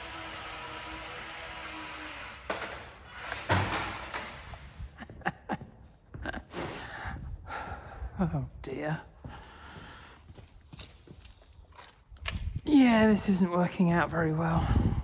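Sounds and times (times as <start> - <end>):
model plane motor and propeller: 0.0 - 2.7.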